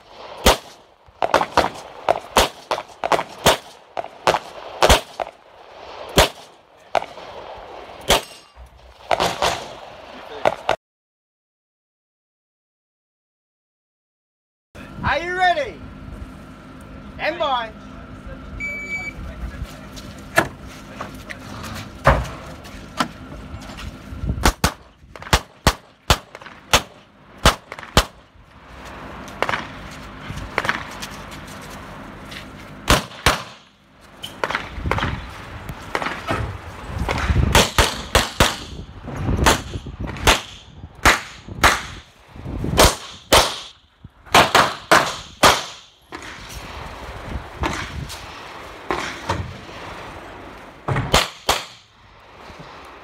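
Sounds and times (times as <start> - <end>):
pistol shots: 0.4 - 5.3, 6.1 - 7.2, 8.0 - 8.5, 24.4 - 28.2, 32.9 - 33.7, 37.5 - 38.8, 39.4 - 42.0, 42.8 - 45.9, 51.0 - 51.9.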